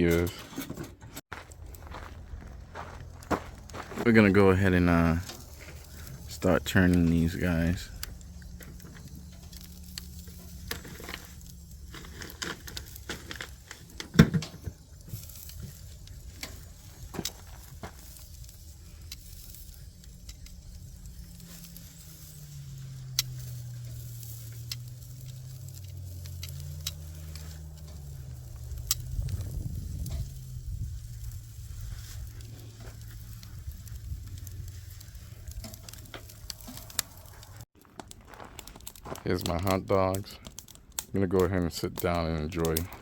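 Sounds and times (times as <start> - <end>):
embers crackling and popping: 1.3 - 43.0
hot dogs sizzling: 1.5 - 37.9.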